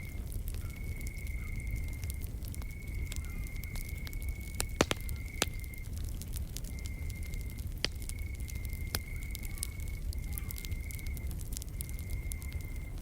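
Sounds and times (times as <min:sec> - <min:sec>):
insect trilling: 0:00.0 - 0:06.0, 0:06.7 - 0:13.0
campfire crackling: 0:00.0 - 0:13.0.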